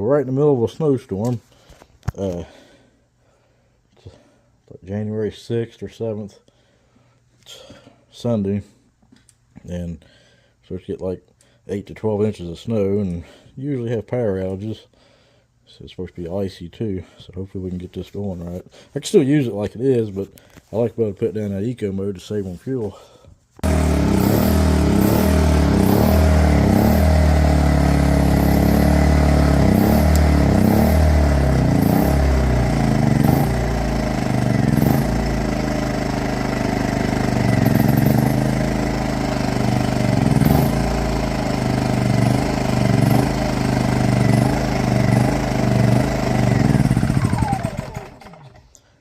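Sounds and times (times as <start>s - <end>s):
generator engine running rough: 23.6s - 48.6s.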